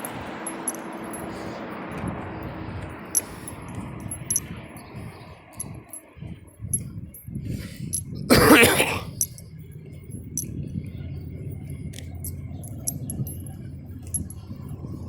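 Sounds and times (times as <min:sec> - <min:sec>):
faint light clinks: 0:00.0 - 0:02.1, 0:03.1 - 0:08.3, 0:09.2 - 0:15.0
steady low rumble: 0:00.0 - 0:15.0
harsh cough: 0:08.3 - 0:09.2.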